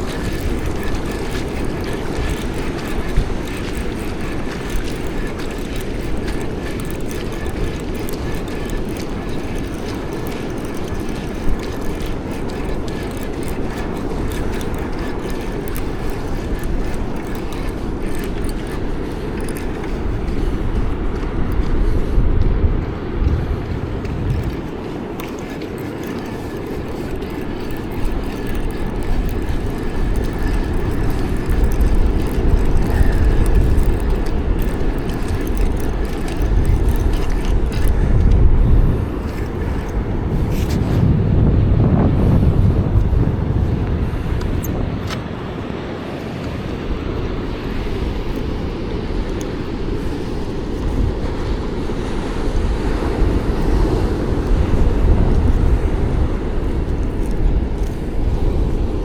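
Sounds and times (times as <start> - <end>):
ocean surf rumbling: 0.0 - 59.0
wind on microphone: 0.0 - 59.0
faint clicks: 23.2 - 40.8.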